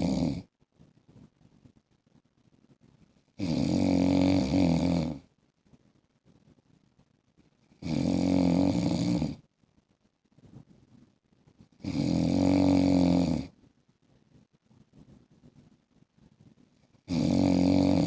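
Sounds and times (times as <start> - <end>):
man snoring: 0.0 - 0.5, 3.4 - 5.2, 7.8 - 9.4, 11.8 - 13.5, 17.1 - 18.0.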